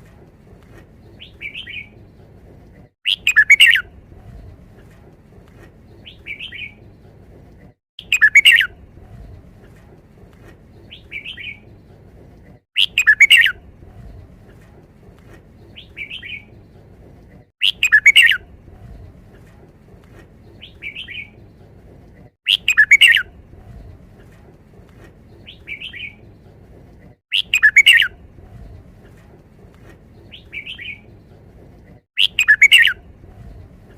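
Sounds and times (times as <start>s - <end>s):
soft bird call: 3.0s - 4.0s, 8.0s - 8.8s, 12.8s - 13.6s, 17.6s - 18.5s, 22.5s - 23.4s, 27.3s - 28.2s, 32.2s - 33.6s
bulbul singing: 3.1s - 4.0s, 8.0s - 8.8s, 12.8s - 13.6s, 17.6s - 18.4s, 22.5s - 23.3s, 27.3s - 28.2s, 32.2s - 33.1s
steady low hum: 3.8s - 6.0s, 8.6s - 10.9s, 13.5s - 15.6s, 18.4s - 20.6s, 23.2s - 25.4s, 28.1s - 30.2s, 33.0s - 33.9s.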